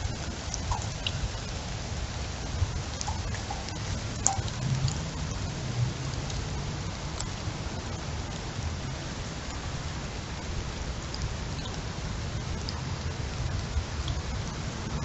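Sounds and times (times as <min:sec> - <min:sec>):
heavy rain hissing: 0:00.0 - 0:15.0
wind rumbling: 0:00.0 - 0:15.0
drops tapping: 0:00.5 - 0:01.2, 0:03.0 - 0:05.0.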